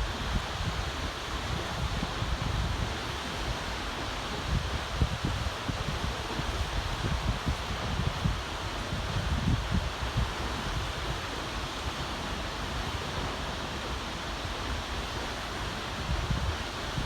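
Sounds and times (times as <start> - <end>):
wind buffeting microphone: 4.4 - 11.3.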